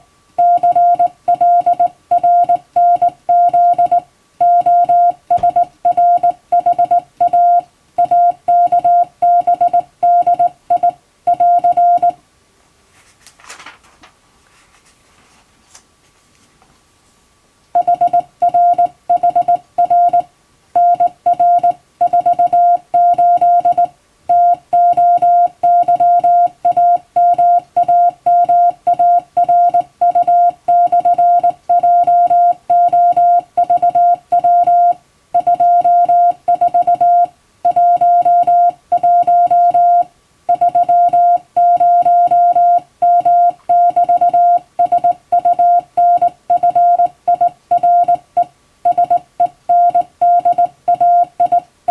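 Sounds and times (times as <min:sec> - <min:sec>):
morse code beeps: 0:00.4 - 0:12.2, 0:17.8 - 0:51.9.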